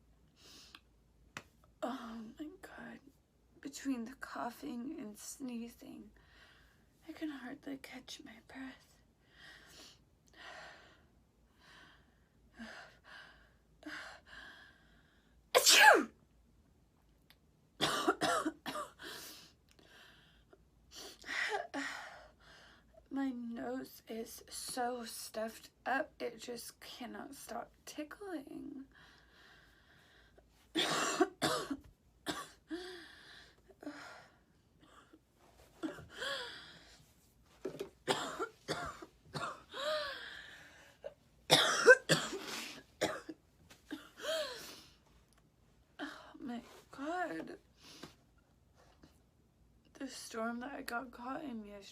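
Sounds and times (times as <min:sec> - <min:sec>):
woman coughing: 0:15.6 - 0:16.1, 0:17.8 - 0:19.0, 0:30.8 - 0:32.6, 0:38.1 - 0:40.0, 0:41.5 - 0:44.6.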